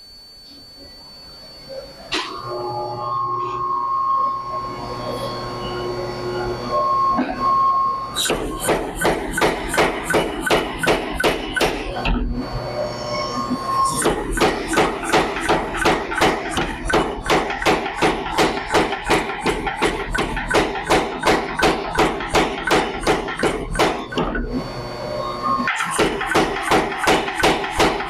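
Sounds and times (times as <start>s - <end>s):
power hammer striking anvil: 8.2s - 12.1s, 13.9s - 24.3s, 25.7s - 28.0s.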